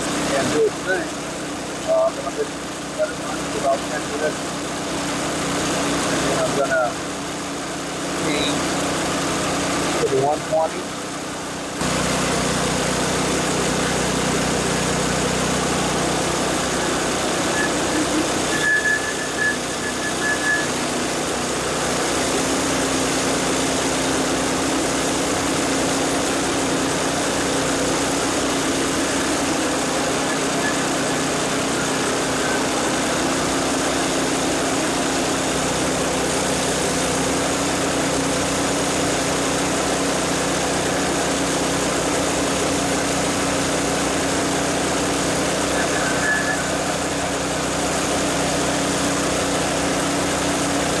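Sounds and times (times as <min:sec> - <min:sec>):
reel mower engine running: 0:00.0 - 0:51.0
brief high squeaks: 0:16.8 - 0:20.9, 0:45.8 - 0:46.9.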